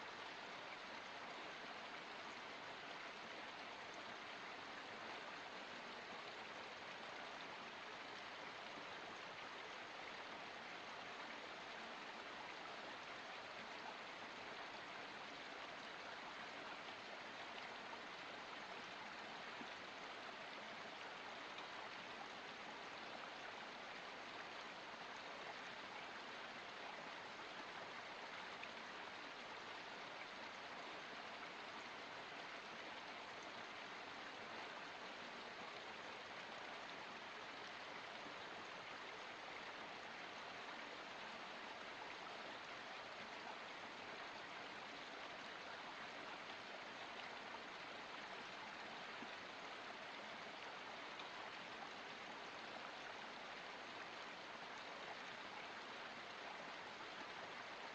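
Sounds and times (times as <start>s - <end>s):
forest stream flowing: 0.0s - 57.9s.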